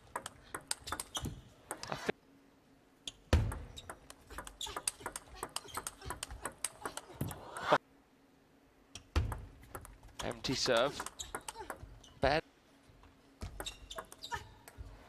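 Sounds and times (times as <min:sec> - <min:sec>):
ping pong ball clicking: 0:00.1 - 0:01.8, 0:03.5 - 0:07.0, 0:09.2 - 0:10.0.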